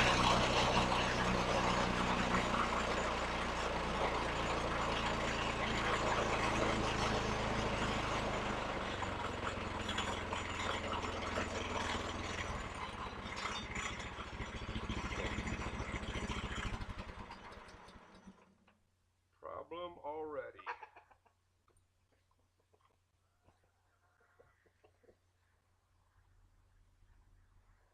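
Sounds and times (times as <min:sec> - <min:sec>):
gasoline engine running: 0:00.0 - 0:18.6.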